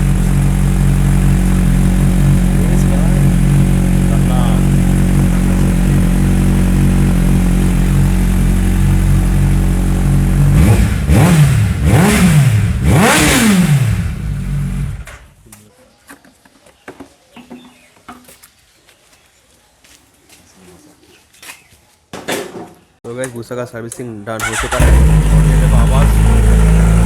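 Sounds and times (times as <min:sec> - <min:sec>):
motorcycle engine idling and revving: 0:00.0 - 0:15.4, 0:24.4 - 0:27.0.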